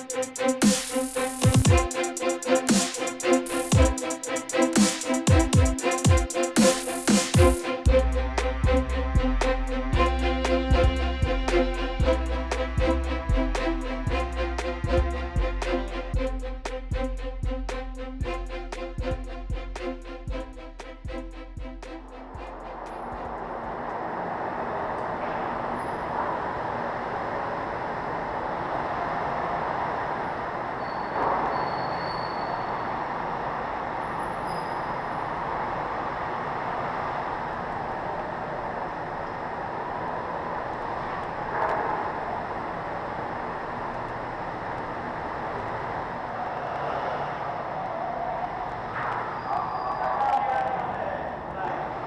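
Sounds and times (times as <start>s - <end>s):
moving vehicle running noise: 0.0s - 31.5s
brief high squeals: 30.8s - 32.9s, 34.2s - 35.2s.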